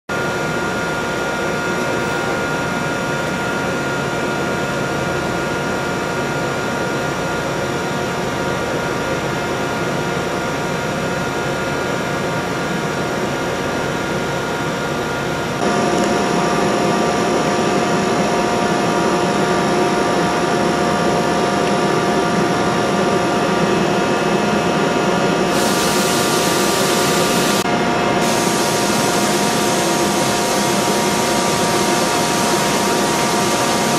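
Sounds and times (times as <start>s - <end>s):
machining centers humming and whining: 0.1s - 33.9s
loud hissing rush: 25.2s - 33.9s.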